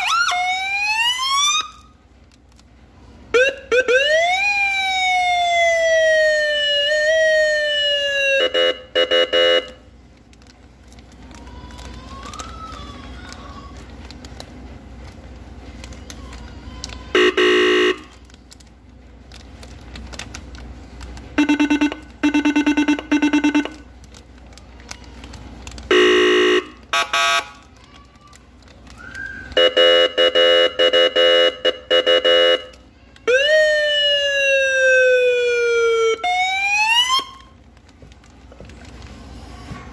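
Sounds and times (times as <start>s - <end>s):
electronic siren cycling tones: 21.4s - 23.8s.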